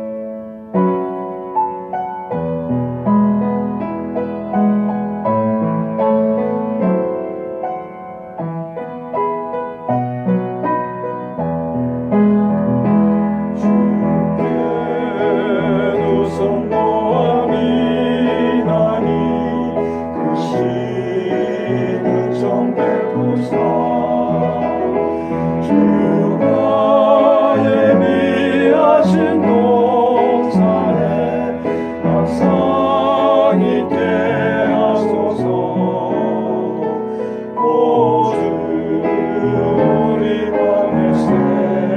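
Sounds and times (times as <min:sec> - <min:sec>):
piano accompaniment: 0:00.0 - 0:41.9
vocal ensemble singing gospel: 0:13.4 - 0:41.9.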